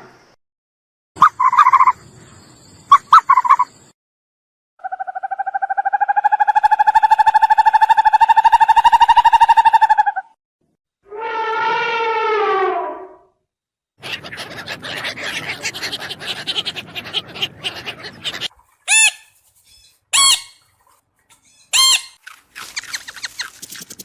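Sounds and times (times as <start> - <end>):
short high squeaks: 21.4 - 24.0
rapid clicking and chattering: 22.2 - 24.0.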